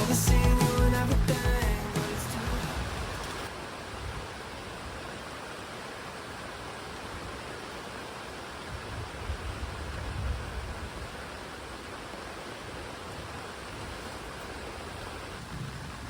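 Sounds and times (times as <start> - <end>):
background music: 0.0 - 3.5
heavy rain hissing: 0.0 - 16.0.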